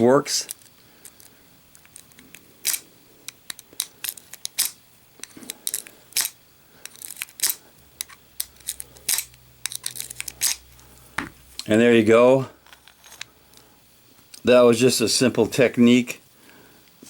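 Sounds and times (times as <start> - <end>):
lock pick clicking and scraping: 0.5 - 10.8.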